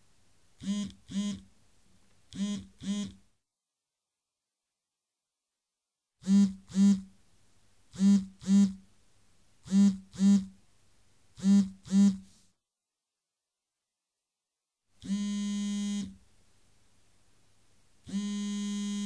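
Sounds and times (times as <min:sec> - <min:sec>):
electronic buzzer double pulses: 0:00.6 - 0:01.4, 0:02.4 - 0:03.2, 0:06.2 - 0:07.1, 0:08.0 - 0:08.8, 0:09.7 - 0:10.5, 0:11.4 - 0:12.2, 0:15.0 - 0:16.2, 0:18.1 - 0:19.0.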